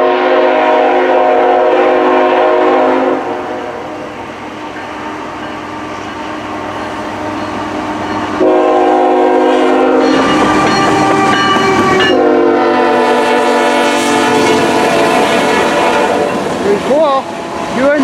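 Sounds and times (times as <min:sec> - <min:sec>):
train air horn blasts: 0:00.0 - 0:04.1, 0:08.2 - 0:16.6.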